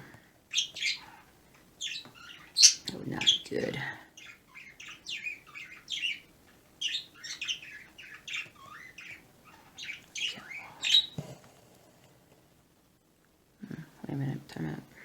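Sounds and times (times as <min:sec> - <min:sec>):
pet birds chirping and squawking: 0:00.5 - 0:11.3.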